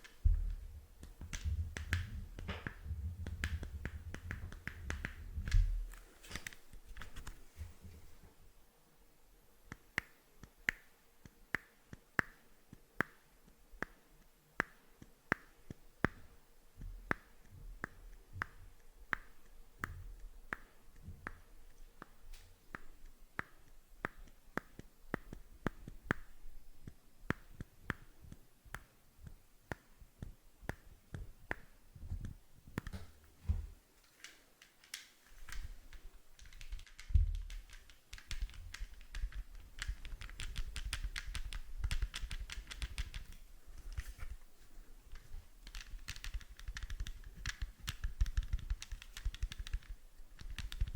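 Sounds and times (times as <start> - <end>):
low thumps: 0.2 - 5.9.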